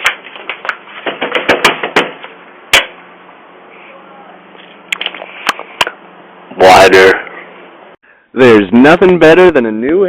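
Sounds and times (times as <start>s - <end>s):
sharp taps and knocks: 0.0s - 3.0s
steady low hum: 0.0s - 10.0s.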